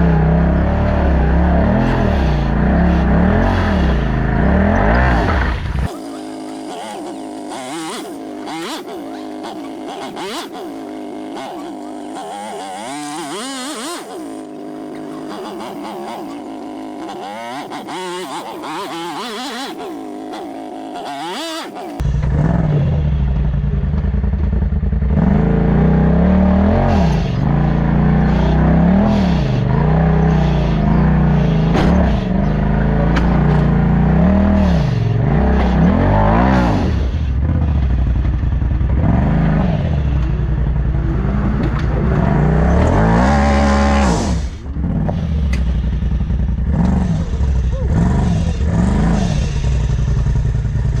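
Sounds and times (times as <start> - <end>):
utility vehicle engine revving: 0.0 - 51.0
clatter: 26.8 - 51.0.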